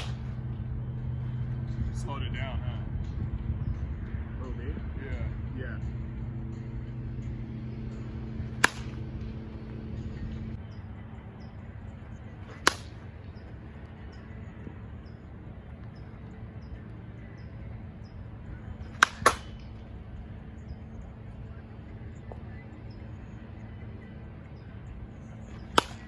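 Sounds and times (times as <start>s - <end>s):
bat cracking on ball: 0.0s - 0.4s, 8.0s - 9.8s, 12.4s - 13.5s, 18.8s - 19.8s, 25.5s - 26.0s.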